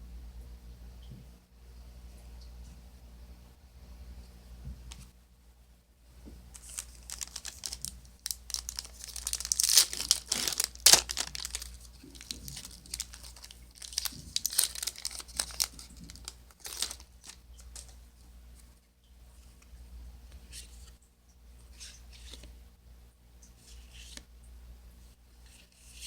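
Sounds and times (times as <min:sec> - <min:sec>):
foil wrapper crinkling and tearing: 0:06.5 - 0:18.0.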